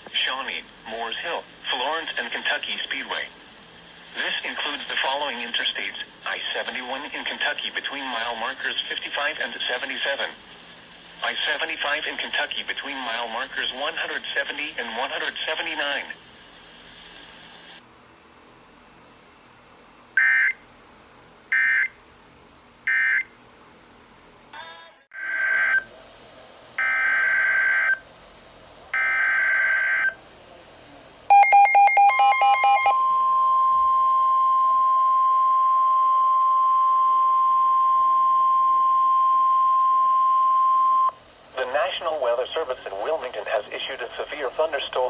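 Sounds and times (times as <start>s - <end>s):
steady alert tone: 31.3s - 33.1s
electronic beeps: 31.3s - 41.1s.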